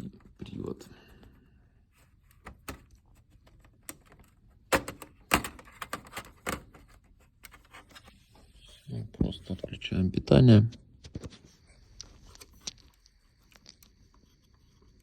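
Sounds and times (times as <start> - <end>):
plastic clicks and knocks: 2.3 - 7.8.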